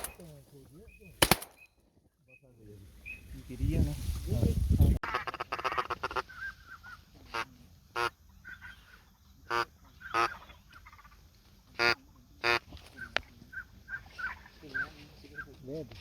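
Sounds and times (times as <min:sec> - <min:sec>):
waterfowl honking: 0:05.0 - 0:11.2, 0:11.8 - 0:15.6.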